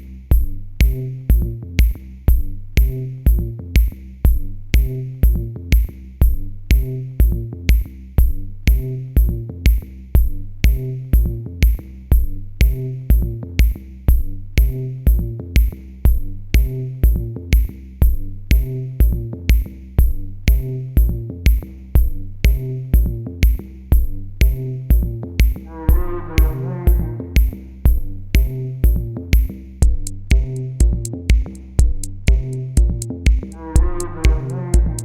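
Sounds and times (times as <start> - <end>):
drum machine beat: 0.0 - 35.0
repeating bass line: 0.0 - 35.0
electronic music: 25.9 - 27.6, 29.8 - 35.0.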